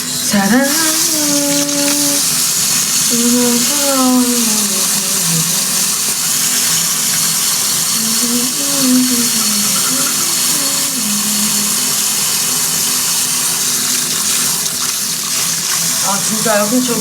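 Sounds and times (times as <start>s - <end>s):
faint wavering tones: 0.0s - 13.6s
tap water running into sink: 0.0s - 17.0s.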